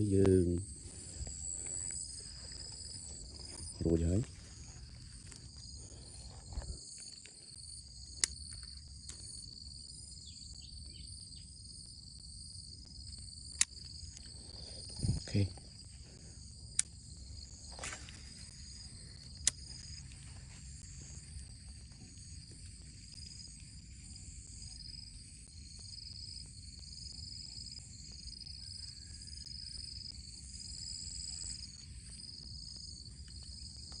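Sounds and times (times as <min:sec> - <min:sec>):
insects trilling: 0:00.0 - 0:34.0
sharp clicks: 0:13.5 - 0:14.2.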